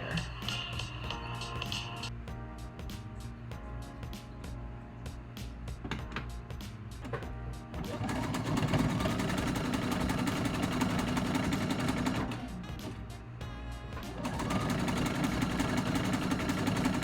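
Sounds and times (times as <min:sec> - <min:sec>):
background music: 0:00.0 - 0:17.0
sewing machine stitching: 0:07.9 - 0:13.0, 0:14.1 - 0:17.0.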